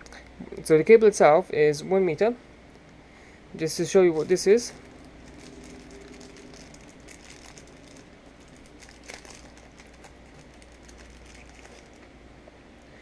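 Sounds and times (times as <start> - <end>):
cable rustling and clicking: 4.2 - 12.1.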